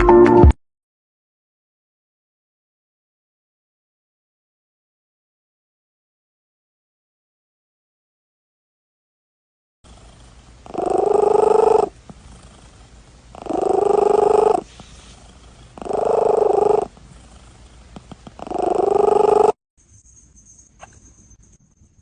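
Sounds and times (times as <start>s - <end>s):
cat purring loudly: 9.9s - 19.6s.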